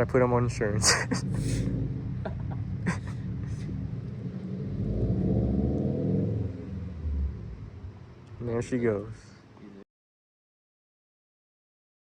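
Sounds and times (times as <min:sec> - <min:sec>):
car engine pulling away: 0:00.0 - 0:09.0.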